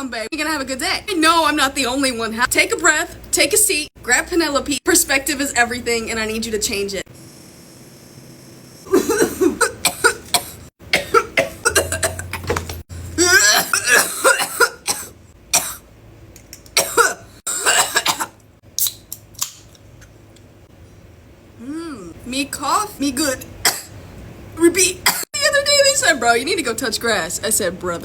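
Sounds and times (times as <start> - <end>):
person coughing hard: 8.9 - 12.5, 13.2 - 15.8, 16.8 - 18.4.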